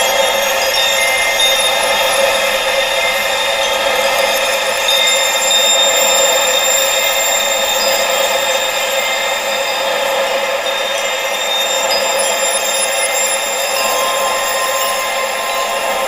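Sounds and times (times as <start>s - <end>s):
steady high-pitched tones: 0.0s - 16.0s.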